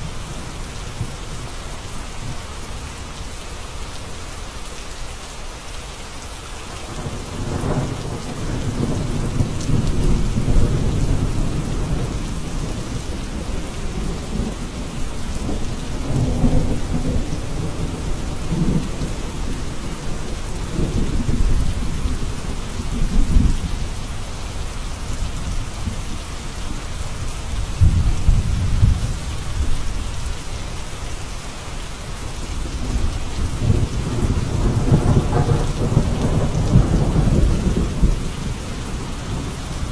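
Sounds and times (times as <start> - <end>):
steady rain falling: 0.0 - 39.9
deep thunder rumbling: 6.9 - 23.8, 32.6 - 39.9.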